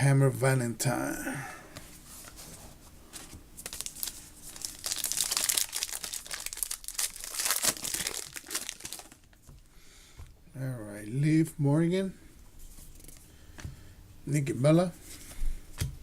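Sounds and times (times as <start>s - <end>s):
wrapper tearing and crinkling: 3.6s - 9.4s.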